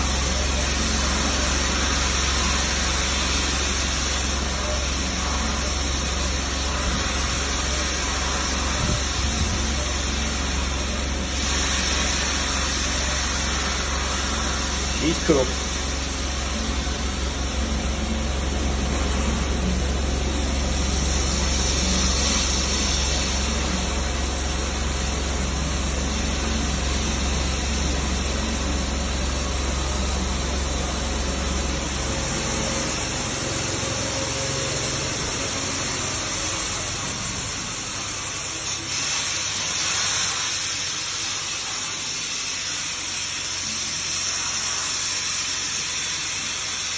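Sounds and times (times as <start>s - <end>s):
rushing hiss of air: 0.0s - 46.9s
low engine drone: 12.9s - 38.2s.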